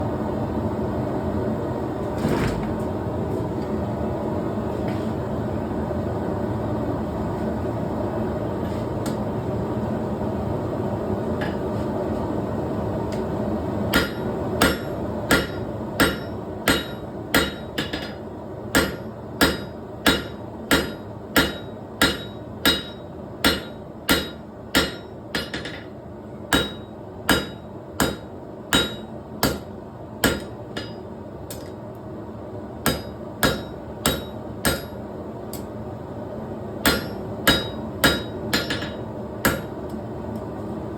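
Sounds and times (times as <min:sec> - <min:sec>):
hammer striking steel on anvil: 0:11.4 - 0:11.8, 0:13.9 - 0:25.9, 0:26.5 - 0:31.8, 0:32.8 - 0:35.7, 0:36.8 - 0:39.9.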